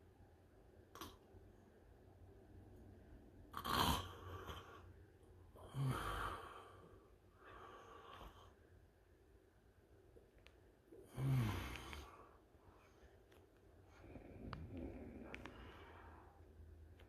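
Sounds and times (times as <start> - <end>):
man snoring: 3.5 - 4.8, 5.6 - 6.9, 11.0 - 12.2.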